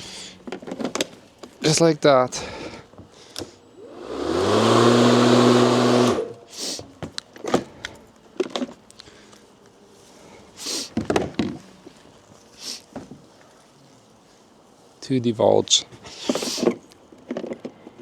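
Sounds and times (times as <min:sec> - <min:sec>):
electric lawnmower motor humming: 0:03.8 - 0:06.4.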